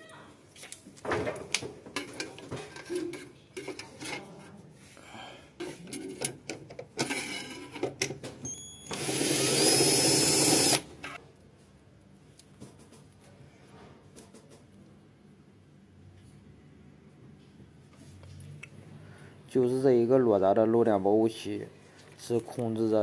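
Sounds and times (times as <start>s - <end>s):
power drill running: 8.9s - 11.2s.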